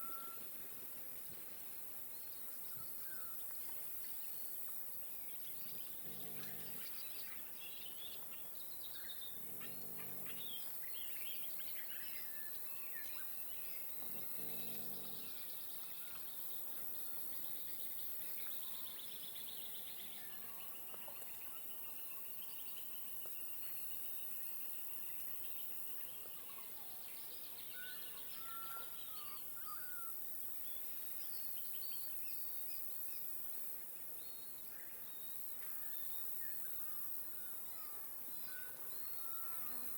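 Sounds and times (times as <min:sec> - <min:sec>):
birds chirping and warbling: 0:05.2 - 0:22.8.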